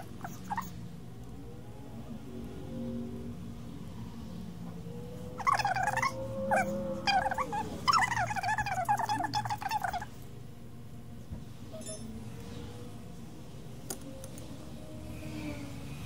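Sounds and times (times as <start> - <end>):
animal whining: 0.0 - 0.8, 4.8 - 10.1
low steady hum: 0.0 - 16.0.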